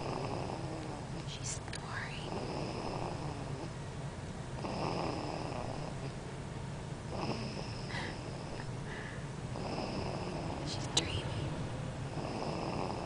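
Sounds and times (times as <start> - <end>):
baby snoring: 0.0 - 1.4, 2.2 - 3.7, 4.6 - 6.2, 7.1 - 10.9, 12.1 - 13.0.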